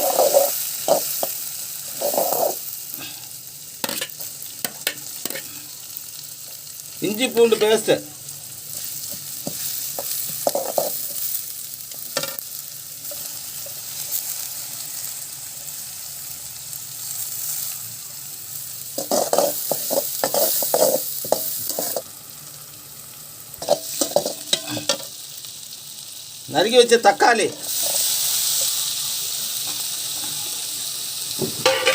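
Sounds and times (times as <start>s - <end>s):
spoon scraping pan: 0.0s - 2.7s, 3.8s - 5.5s, 8.7s - 11.3s, 19.0s - 22.1s, 23.6s - 25.1s
onions sizzling in oil: 0.0s - 31.9s.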